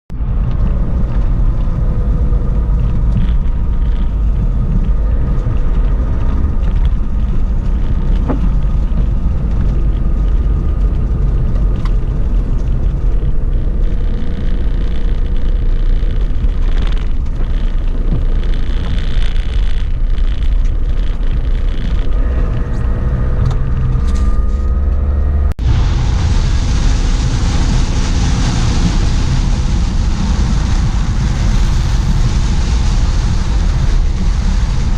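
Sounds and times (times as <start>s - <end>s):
heavy rain: 25.6s - 34.9s.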